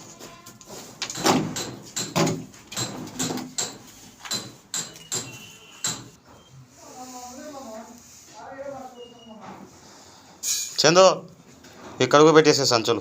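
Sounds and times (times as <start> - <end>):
tools knocking and scraping: 0.6 - 6.4.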